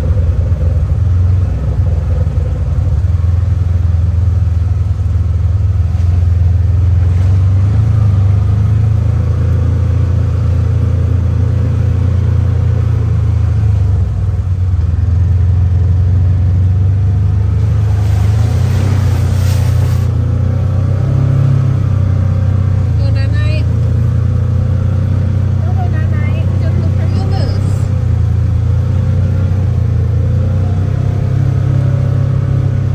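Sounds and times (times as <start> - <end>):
vehicle engine and road rumble: 0.0 - 32.9
rush of hiss: 17.6 - 20.3.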